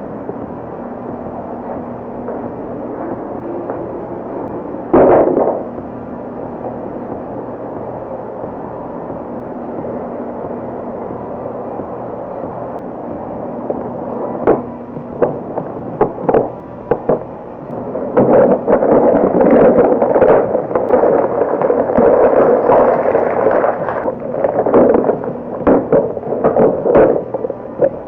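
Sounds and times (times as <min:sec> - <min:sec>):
loud crackling and rustling: 0:12.4 - 0:28.0.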